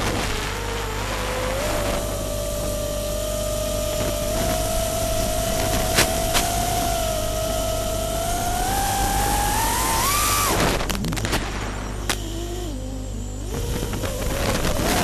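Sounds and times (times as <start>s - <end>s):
drone motors whining: 0.0s - 15.0s.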